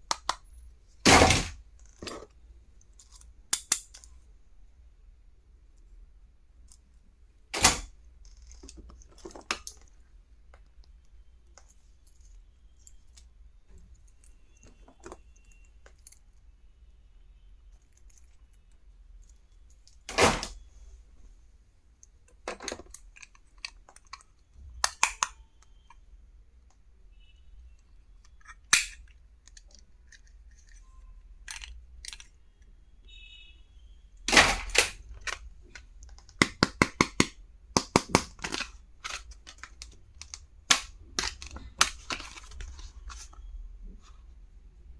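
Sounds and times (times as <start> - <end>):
plastic stationery clicking and tapping: 22.4 - 25.4, 35.0 - 42.7
packaging rustling: 41.1 - 43.5.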